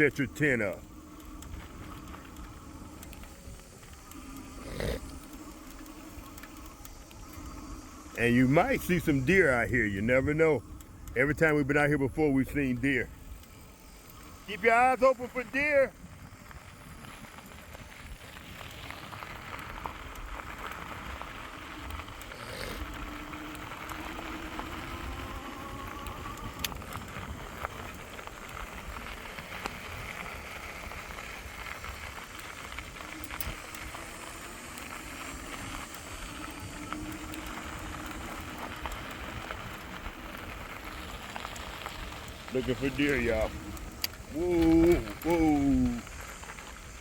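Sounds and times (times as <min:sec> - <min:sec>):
tyre noise on dirt track: 0:00.0 - 0:47.0
vehicle engine: 0:18.6 - 0:47.0.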